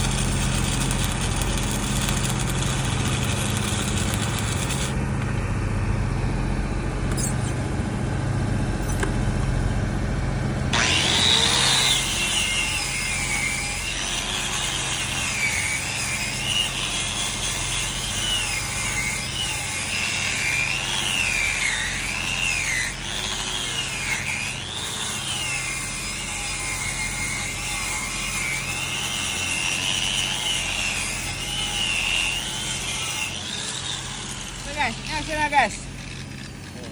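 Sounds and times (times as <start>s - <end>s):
power tool whining: 0.0s - 5.6s, 10.7s - 36.9s
low engine hum: 0.0s - 10.8s.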